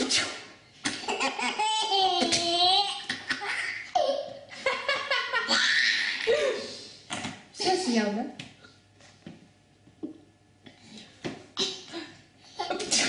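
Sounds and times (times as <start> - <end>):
baby laughing: 0.9 - 6.6.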